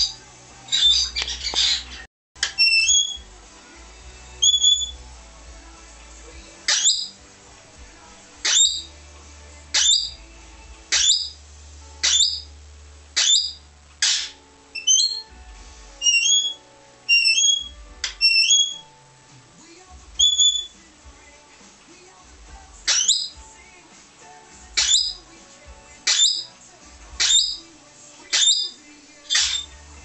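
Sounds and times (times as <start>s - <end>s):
parrot sharp rising calls: 0.7s - 3.2s, 4.4s - 5.0s, 6.7s - 7.1s, 8.4s - 8.9s, 9.7s - 10.1s, 10.9s - 11.4s, 12.0s - 12.5s, 13.2s - 15.3s, 16.0s - 18.8s, 20.2s - 20.7s, 22.9s - 23.4s, 24.8s - 25.2s, 26.0s - 26.5s
parrot whistled notes: 0.7s - 3.2s, 4.4s - 5.0s, 6.7s - 7.1s, 8.4s - 8.9s, 9.8s - 10.2s, 10.9s - 11.4s, 12.0s - 12.5s, 13.2s - 15.3s, 16.0s - 18.9s, 20.2s - 20.8s, 22.9s - 23.4s, 24.8s - 25.2s, 26.0s - 26.5s, 27.2s - 27.6s, 28.3s - 29.7s.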